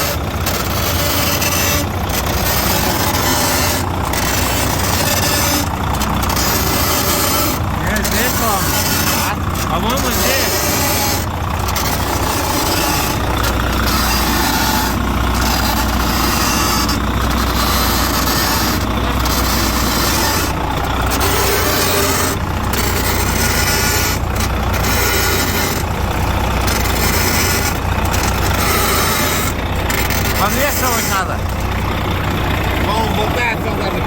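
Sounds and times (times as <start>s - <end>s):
diesel truck engine idling: 0.0s - 34.0s.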